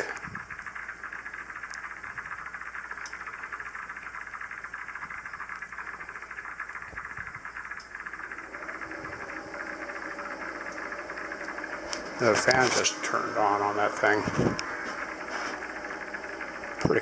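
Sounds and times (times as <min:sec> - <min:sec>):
faint clicks: 0:00.0 - 0:08.2
radio static hissing: 0:08.6 - 0:17.0.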